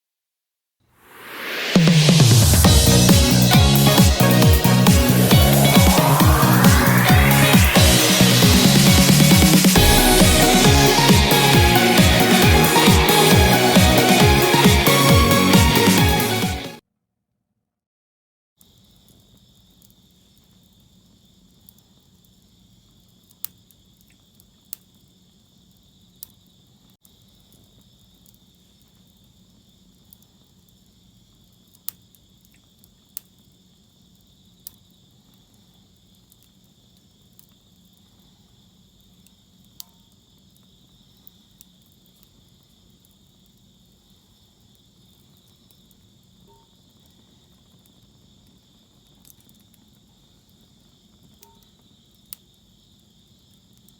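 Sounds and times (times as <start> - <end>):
wood fire crackling and popping: 46.9 - 51.4.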